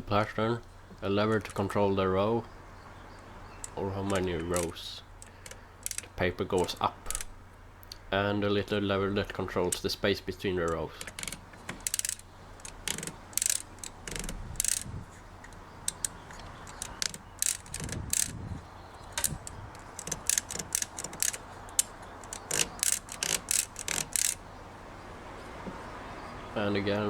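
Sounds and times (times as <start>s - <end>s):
typewriter ratchet clicks: 3.6s - 7.4s, 10.6s - 18.4s, 19.0s - 24.4s.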